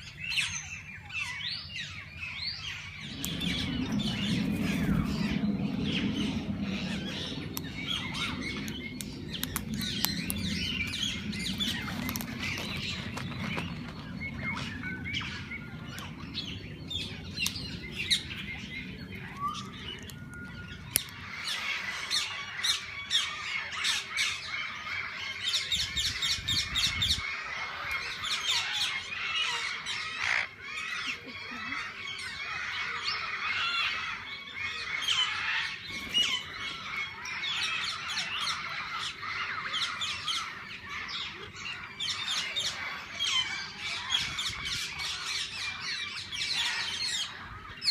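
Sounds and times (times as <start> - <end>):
parakeets squawking and chattering: 0.0 - 47.9
low rumble: 2.0 - 23.2.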